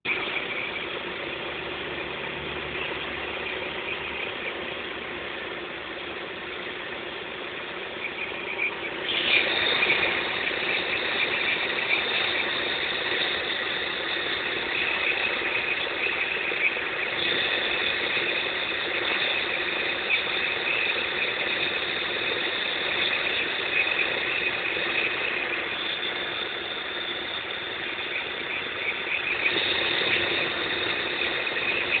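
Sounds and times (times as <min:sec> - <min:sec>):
high-pitched squeal: 0:00.0 - 0:32.0.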